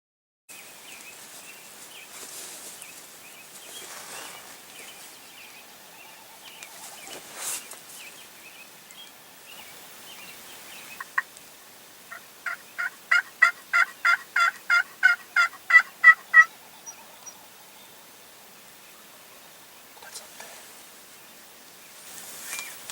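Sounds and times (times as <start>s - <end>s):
faint birdsong: 0.5s - 22.9s
turkey yelps: 12.1s - 16.5s.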